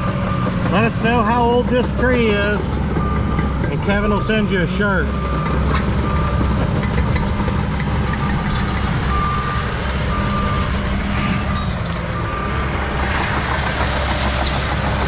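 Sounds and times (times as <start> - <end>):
heavy machine engine running: 0.0 - 15.0
backup alarm beeps: 3.0 - 6.6, 8.0 - 12.6.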